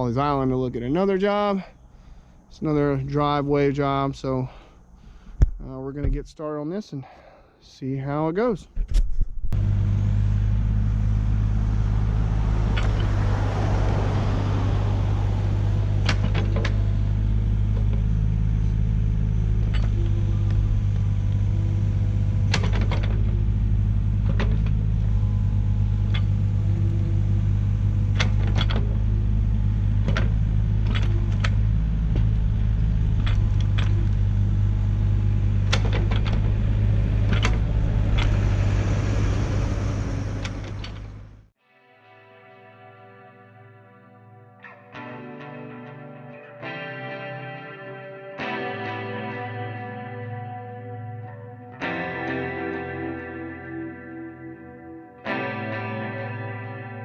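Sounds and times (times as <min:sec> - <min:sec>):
diesel excavator engine running: 0:00.0 - 0:05.5, 0:09.6 - 0:41.5
sharp metal knocks and clanks: 0:22.5 - 0:23.5, 0:35.6 - 0:38.8.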